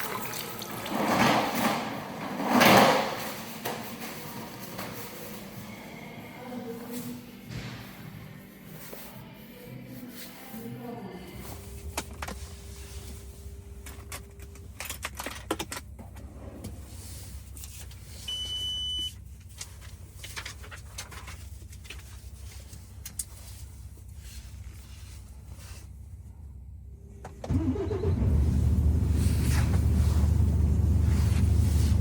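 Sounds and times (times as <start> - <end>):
diesel engine starting and running: 26.0 - 32.0.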